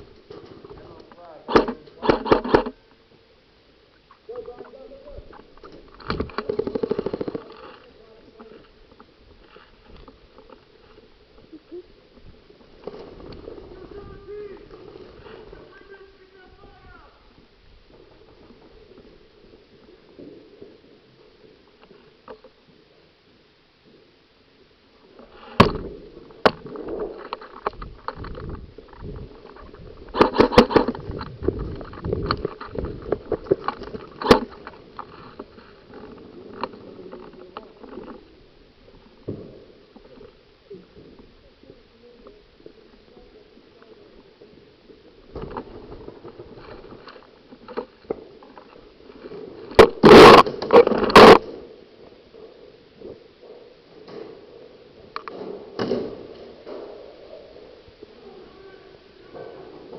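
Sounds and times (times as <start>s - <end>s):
rustling and rubbing on microphone: 4.6s - 15.9s, 25.2s - 40.4s.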